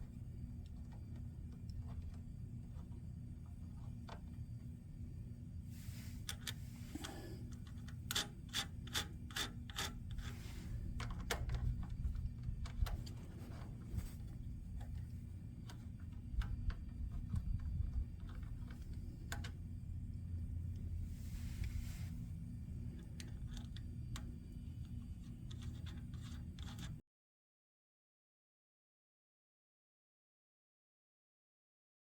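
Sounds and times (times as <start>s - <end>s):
steady low hum: 0.0s - 27.0s
metal engine parts clicking: 6.2s - 10.4s.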